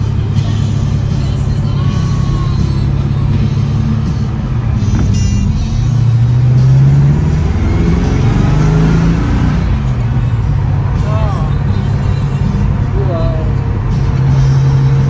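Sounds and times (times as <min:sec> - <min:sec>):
car engine accelerating: 0:00.0 - 0:15.0.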